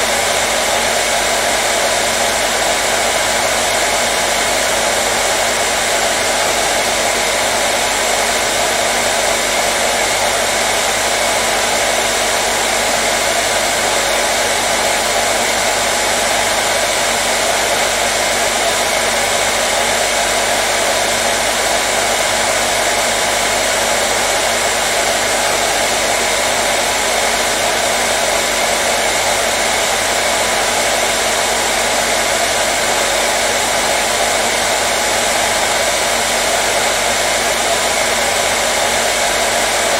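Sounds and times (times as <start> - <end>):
hairdryer blowing air: 0.0 - 39.9.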